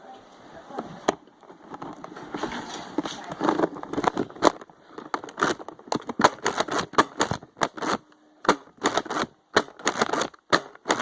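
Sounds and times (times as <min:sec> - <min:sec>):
plastic toy blasters clacking: 0:03.4 - 0:11.0.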